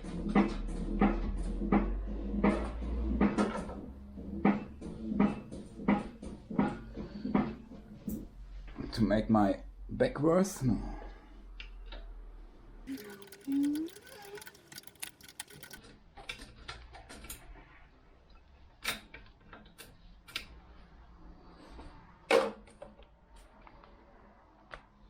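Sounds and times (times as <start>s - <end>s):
run of clicks: 12.9s - 15.8s
tools and metal parts knocking: 12.9s - 15.8s.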